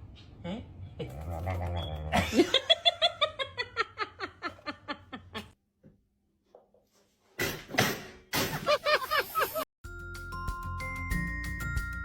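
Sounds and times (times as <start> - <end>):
person laughing hard: 8.5 - 9.6.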